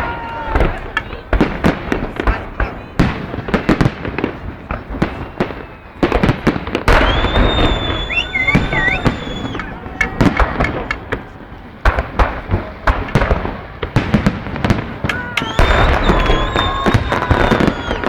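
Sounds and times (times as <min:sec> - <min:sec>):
fireworks bangs and pops: 0:00.0 - 0:18.0
fireworks crackling: 0:00.0 - 0:18.0
high whistling tone: 0:07.0 - 0:09.7, 0:15.4 - 0:18.0.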